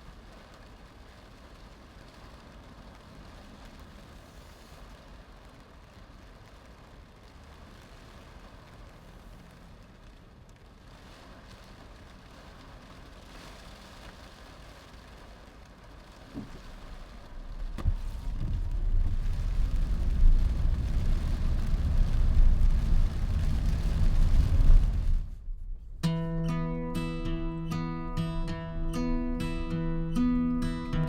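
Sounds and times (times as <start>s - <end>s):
faint steady hiss: 0.0s - 31.0s
loud low rumble: 17.1s - 31.0s.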